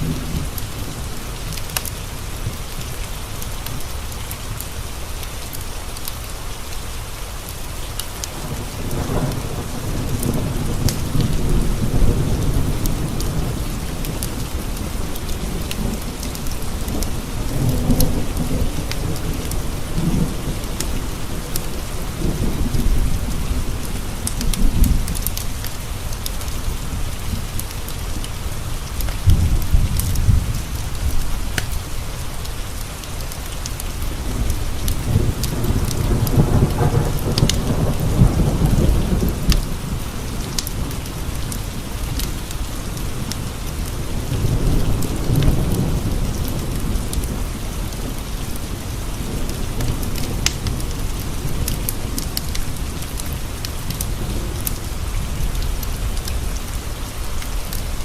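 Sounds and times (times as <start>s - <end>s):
heavy rain on window glass: 0.0s - 58.0s
rolling thunder: 29.2s - 31.8s, 33.8s - 58.0s.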